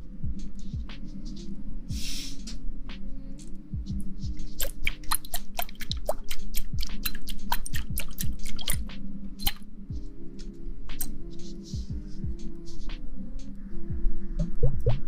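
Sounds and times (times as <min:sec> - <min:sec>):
wet squishes: 0:04.6 - 0:08.8
steady low hum: 0:07.8 - 0:15.0
soft low thumps: 0:13.9 - 0:15.0.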